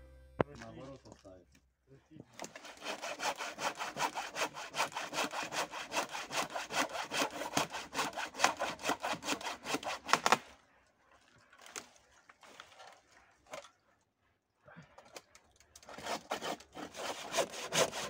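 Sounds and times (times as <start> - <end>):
hand saw cutting wood: 2.4 - 10.4, 15.8 - 18.0.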